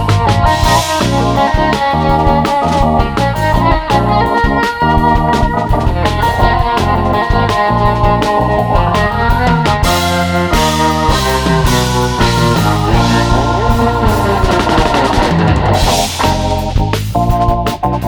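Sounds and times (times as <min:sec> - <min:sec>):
music with drums and guitar: 0:00.0 - 0:18.0.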